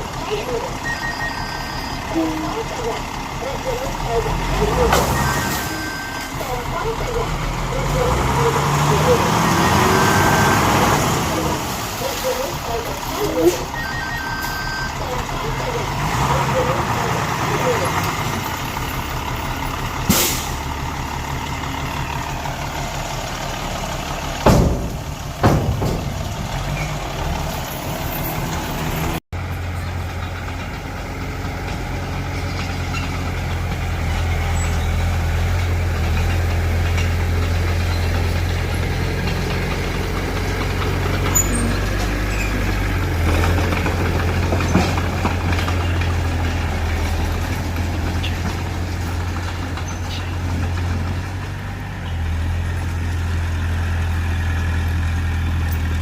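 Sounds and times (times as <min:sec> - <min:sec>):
heavy diesel machinery running: 0:00.0 - 0:56.0
sharp metallic bangs: 0:24.4 - 0:26.8.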